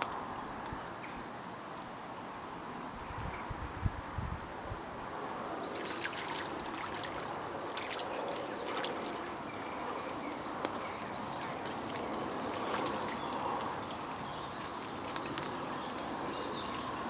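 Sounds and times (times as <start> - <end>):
water trickling: 5.3 - 17.0
small water drips: 5.6 - 17.0.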